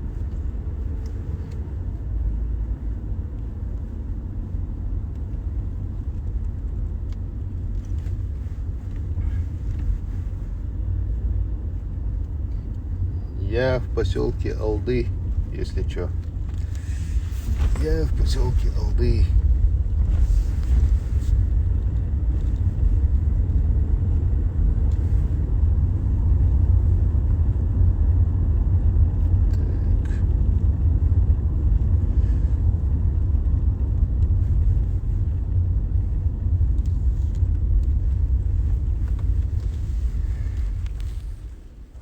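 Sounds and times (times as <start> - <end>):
car engine and road noise: 0.0 - 42.0.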